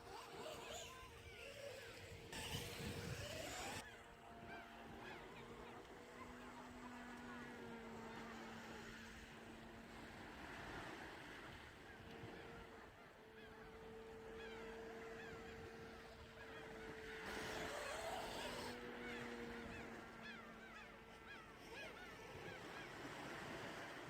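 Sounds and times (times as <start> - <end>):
distant model airplane motor drone: 0.0 - 24.0
wind rumble on microphone: 2.0 - 3.8.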